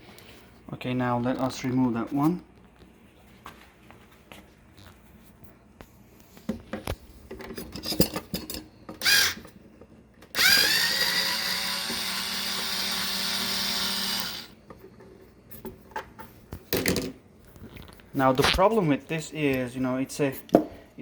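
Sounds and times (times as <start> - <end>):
power drill motor whirring: 9.0 - 9.4, 10.3 - 14.6.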